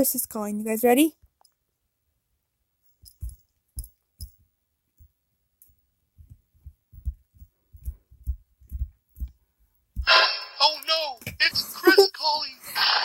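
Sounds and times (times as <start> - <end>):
soft low thumps: 6.2 - 10.1.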